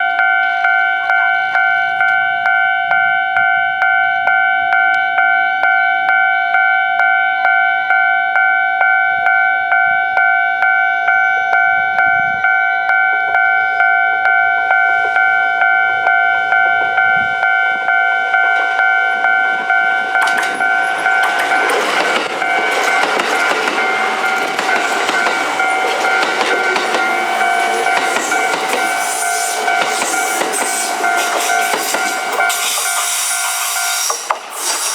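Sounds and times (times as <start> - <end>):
level crossing alarm dinging: 0.0 - 34.6
wheels rattling over rail joints: 17.6 - 34.9
train rushing past: 17.8 - 34.9.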